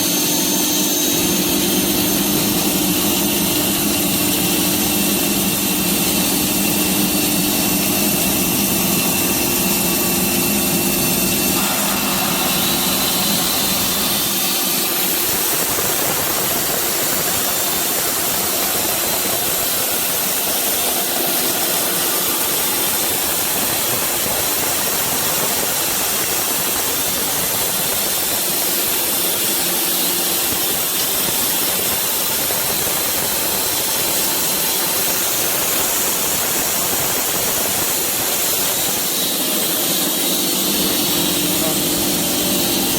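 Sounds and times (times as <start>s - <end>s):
saw machine hum: 0.0s - 27.1s, 27.8s - 42.9s
hissing rush: 11.5s - 24.4s.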